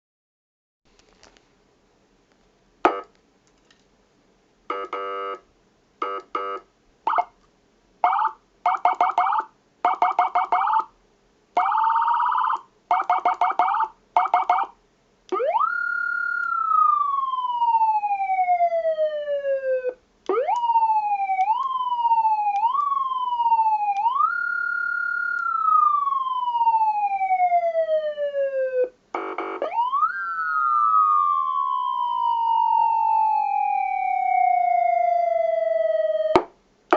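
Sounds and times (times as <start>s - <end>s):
electronic siren tones: 6.0s - 7.3s, 8.0s - 10.9s, 11.6s - 36.4s.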